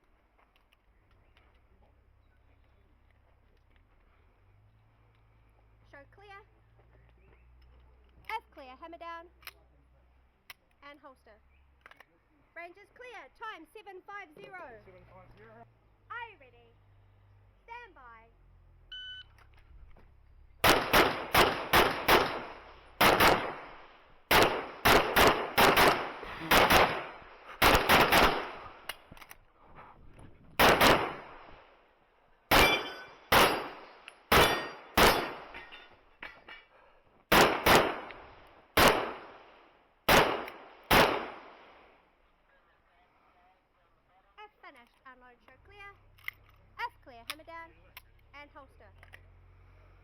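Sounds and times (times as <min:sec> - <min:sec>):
pistol shots: 0:20.6 - 0:29.1, 0:30.6 - 0:31.7, 0:32.5 - 0:35.9, 0:37.3 - 0:41.9.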